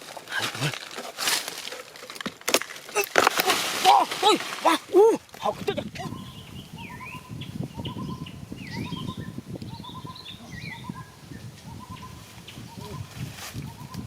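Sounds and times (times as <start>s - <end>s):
rustling handling noise: 0.0s - 5.7s
birds calling: 2.9s - 14.0s
whistled bird notes: 6.1s - 14.0s.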